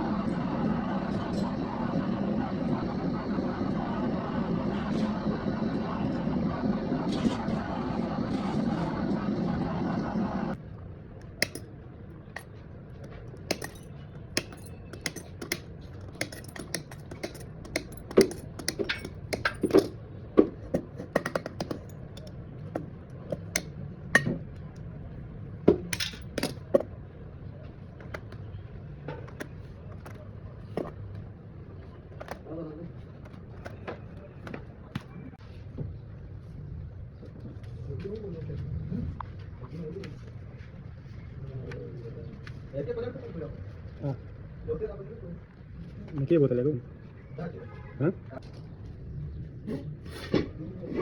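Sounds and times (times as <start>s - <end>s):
steady machine noise: 0.0s - 10.6s, 12.4s - 24.5s
metal and plastic pieces clinking: 11.4s - 11.6s, 13.1s - 20.0s, 25.9s - 26.8s.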